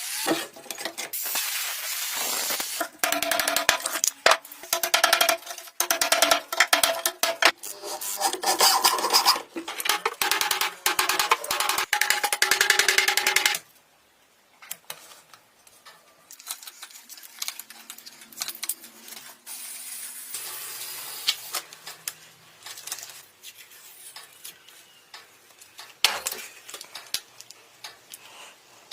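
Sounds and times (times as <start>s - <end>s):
scraping or rubbing: 7.3s - 10.2s.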